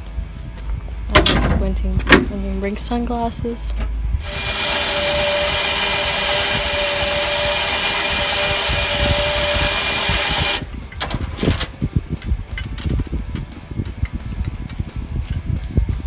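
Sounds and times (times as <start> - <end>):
machine whining: 3.6 - 14.6.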